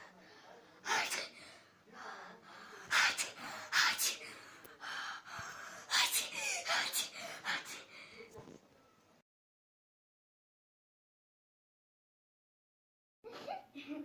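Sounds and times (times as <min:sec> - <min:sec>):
child gasping breaths: 0:01.3 - 0:08.3.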